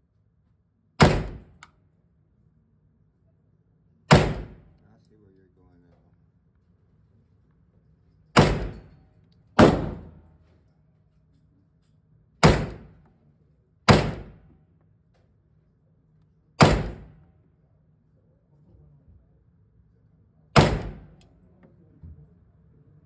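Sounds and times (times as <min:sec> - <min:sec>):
gunshots with echo: 0:04.1 - 0:04.7, 0:08.4 - 0:09.0.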